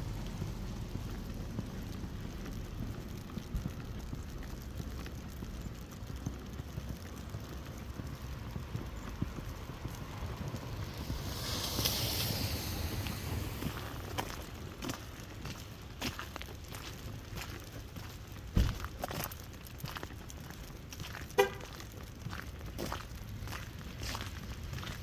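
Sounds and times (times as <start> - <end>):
wind rushing on microphone: 8.4 - 14.8
footsteps crunching through snow: 9.4 - 20.0
hiss: 10.7 - 14.6.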